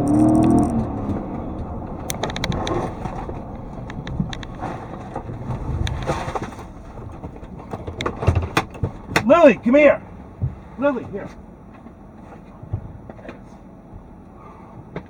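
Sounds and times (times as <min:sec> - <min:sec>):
road and engine rumble: 0:00.0 - 0:15.0
sharp clicks: 0:02.0 - 0:06.1.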